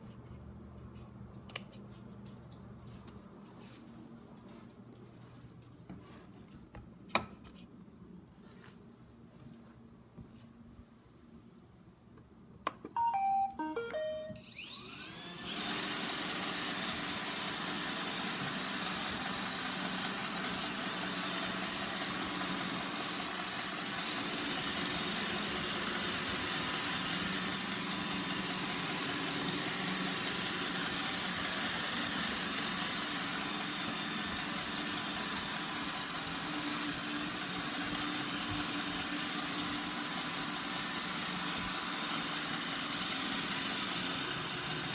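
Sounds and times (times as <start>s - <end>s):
electronic beeps: 13.0s - 14.7s
robot vacuum motor and brushes: 14.0s - 44.9s.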